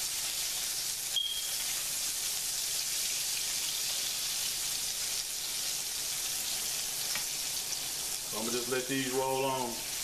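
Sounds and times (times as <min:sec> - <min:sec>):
bacon frying in hot oil: 0:00.0 - 0:10.0.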